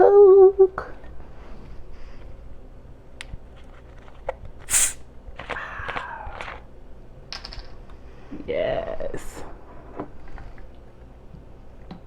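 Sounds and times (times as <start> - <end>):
can opening hiss: 4.6 - 5.6.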